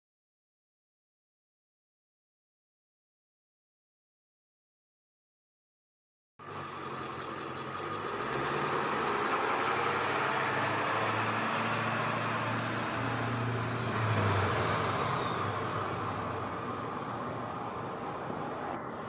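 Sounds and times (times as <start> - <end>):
vehicle engine running: 6.4 - 19.0.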